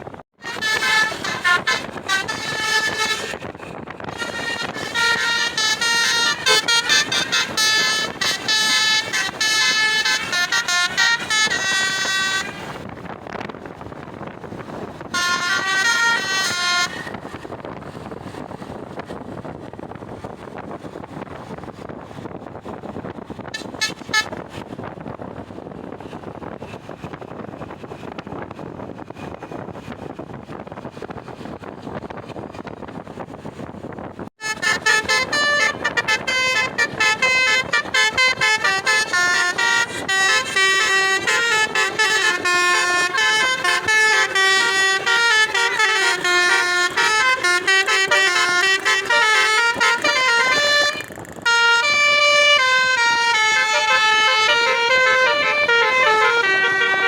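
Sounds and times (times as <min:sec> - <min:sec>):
bus engine and road noise: 0:00.0 - 0:57.0
bus horn playing a tune: 0:00.4 - 0:12.9, 0:14.2 - 0:18.4, 0:23.3 - 0:24.8, 0:34.4 - 0:57.0.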